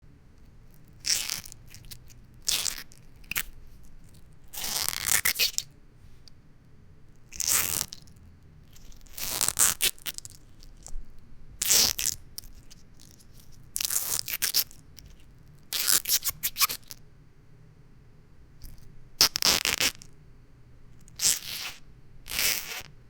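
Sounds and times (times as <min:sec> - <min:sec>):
orange being squeezed: 0:18.7 - 0:20.1.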